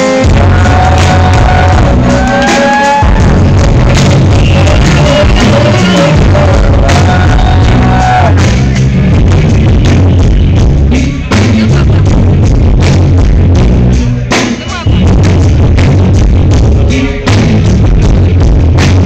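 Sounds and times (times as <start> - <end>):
person singing long notes: 0.0 - 8.4
live band music: 0.0 - 19.0.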